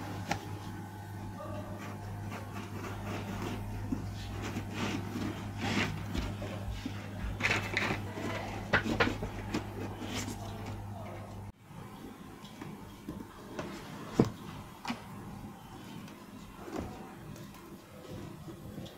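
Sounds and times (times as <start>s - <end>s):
steady low hum: 0.0s - 18.9s
clicks and scrapes: 1.8s - 10.9s.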